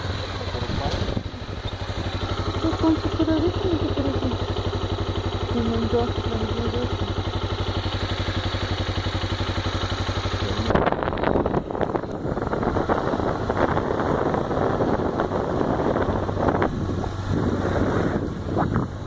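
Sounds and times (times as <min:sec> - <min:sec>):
motorcycle engine running: 0:00.0 - 0:19.0
wind noise on microphone: 0:10.5 - 0:19.0.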